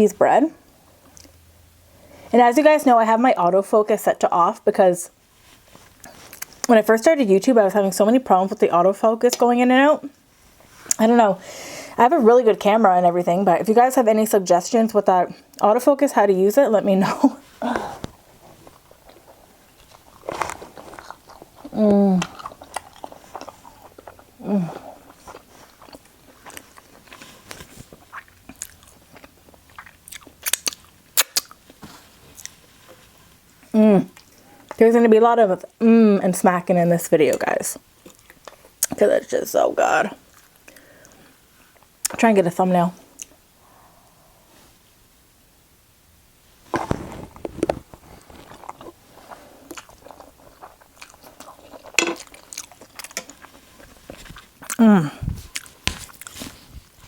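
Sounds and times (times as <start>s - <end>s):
chewing with crunches: 18.1s - 34.8s, 38.0s - 39.0s, 40.3s - 41.9s, 46.8s - 57.0s
crunching bites of food: 18.7s - 24.3s, 25.1s - 31.7s
wet mouth smacks: 30.1s - 31.6s.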